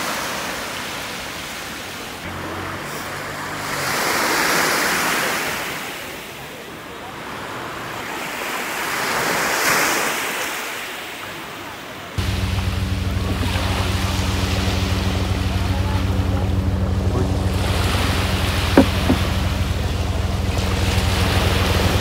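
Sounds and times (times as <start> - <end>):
engine humming: 2.0 - 5.0, 12.2 - 22.0.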